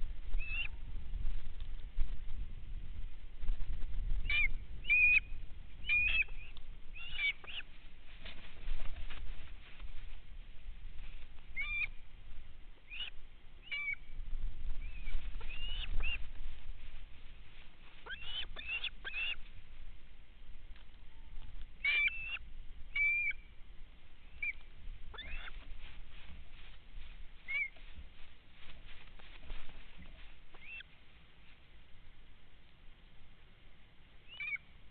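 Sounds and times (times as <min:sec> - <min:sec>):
faint low rumble: 0:00.0 - 0:34.9
high-pitched animal chirps: 0:05.8 - 0:07.7, 0:11.6 - 0:11.9, 0:12.9 - 0:14.0, 0:18.0 - 0:19.4, 0:21.8 - 0:22.4, 0:24.4 - 0:25.6, 0:27.5 - 0:27.8, 0:34.3 - 0:34.6.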